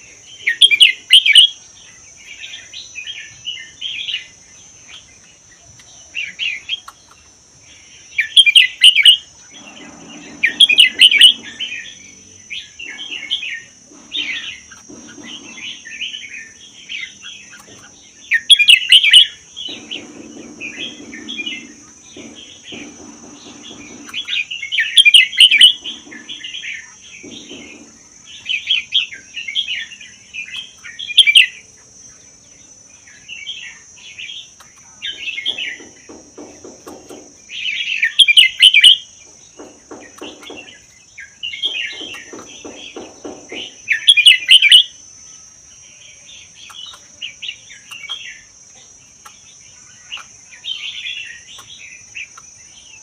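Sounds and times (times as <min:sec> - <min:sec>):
bird singing warbled phrases: 0:00.0 - 0:53.0.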